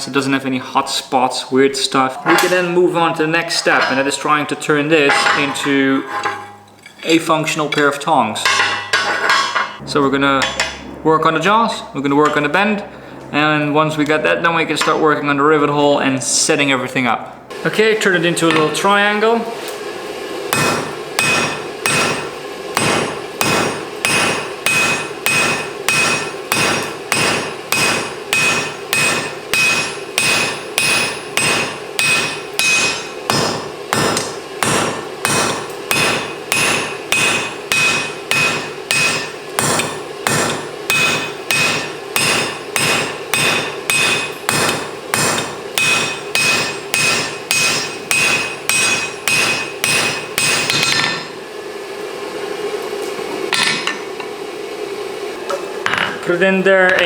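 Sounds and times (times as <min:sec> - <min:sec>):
steady hum: 0:00.0 - 0:15.5, 0:17.4 - 0:52.8
hammer ringing on anvil: 0:07.7 - 0:09.8, 0:20.5 - 0:51.3.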